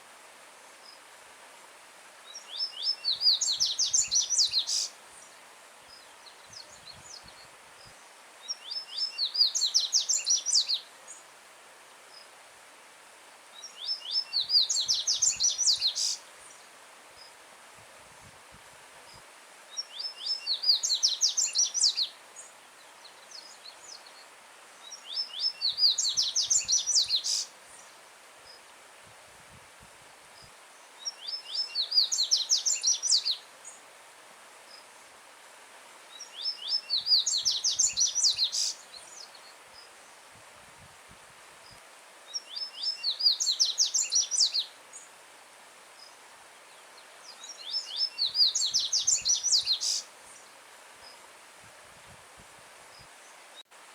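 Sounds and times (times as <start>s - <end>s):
bird singing: 36.1s - 39.5s, 42.4s - 44.7s, 47.3s - 50.1s.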